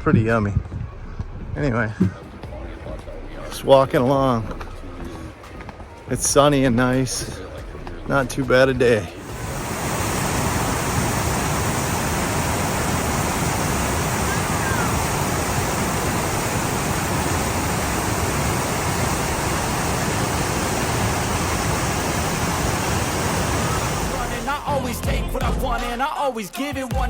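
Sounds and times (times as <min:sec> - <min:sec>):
waterfall roar: 0:09.2 - 0:24.6.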